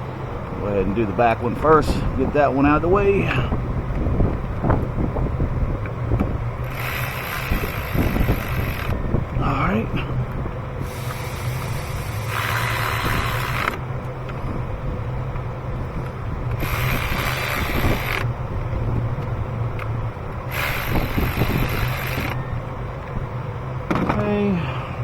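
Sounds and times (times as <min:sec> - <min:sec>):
low hum: 0:00.0 - 0:25.0
small clicks: 0:06.6 - 0:09.0, 0:10.9 - 0:14.4, 0:16.5 - 0:18.3, 0:20.5 - 0:22.4
hissing rustling noise: 0:10.8 - 0:13.8.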